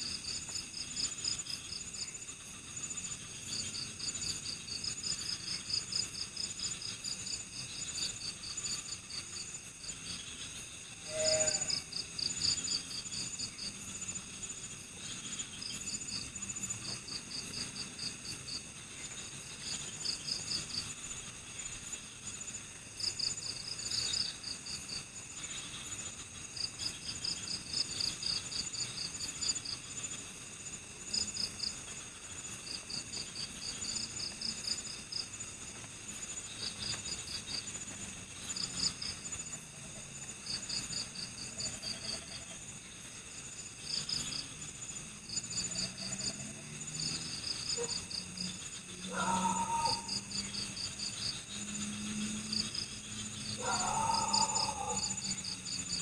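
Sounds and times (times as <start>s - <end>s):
crickets trilling: 0.0s - 56.0s
lower louder insect call: 0.0s - 56.0s.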